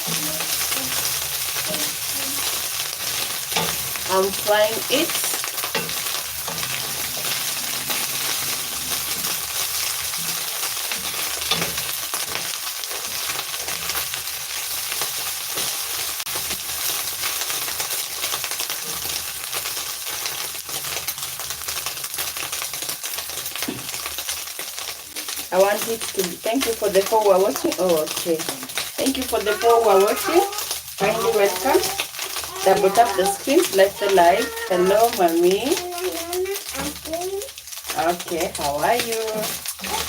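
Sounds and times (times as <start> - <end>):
fish sizzling in hot oil: 0.0 - 40.0.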